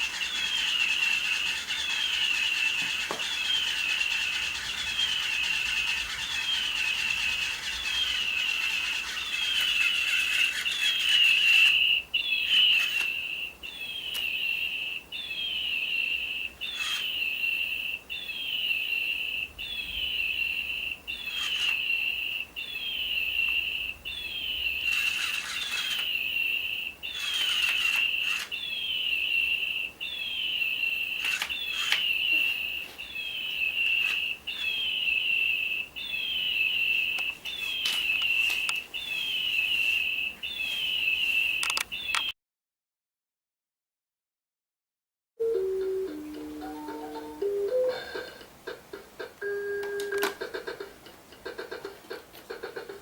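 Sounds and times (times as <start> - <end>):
toy bird electronic chirp: 0.0 - 42.3.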